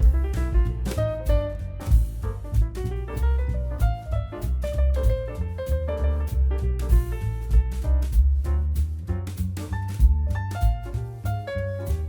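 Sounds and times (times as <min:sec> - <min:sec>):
jazz music with walking bass: 0:00.0 - 0:12.0.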